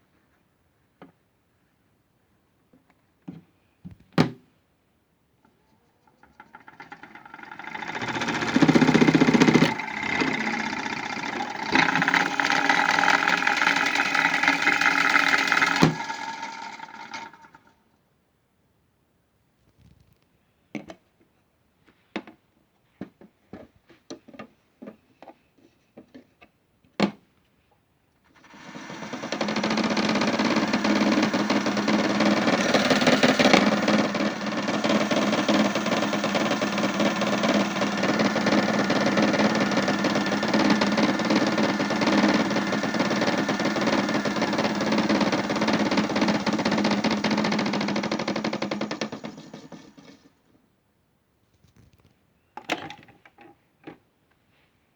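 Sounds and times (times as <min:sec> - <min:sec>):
motor hum: 0:06.2 - 0:17.7, 0:28.4 - 0:50.3
spinning drum rattling: 0:06.2 - 0:17.7, 0:28.4 - 0:50.3
knocks and clicks: 0:28.5 - 0:50.2.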